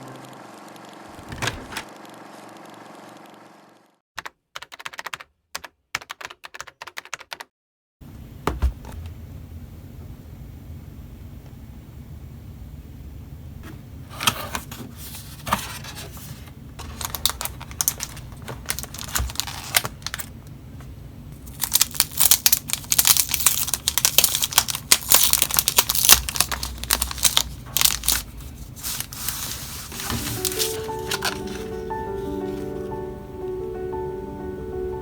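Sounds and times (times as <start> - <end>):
packaging tearing and crinkling: 16.8 - 20.4, 21.4 - 32.4.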